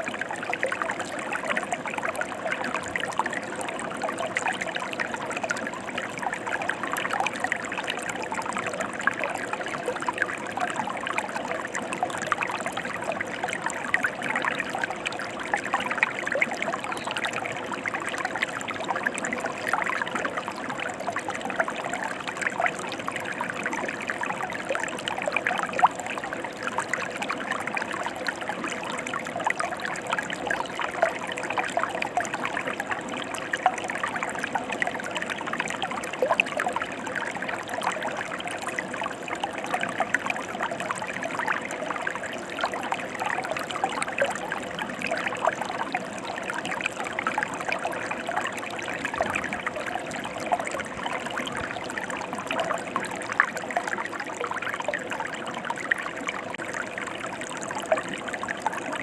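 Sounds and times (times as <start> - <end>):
stream water splashing over rocks: 0.0 - 59.0.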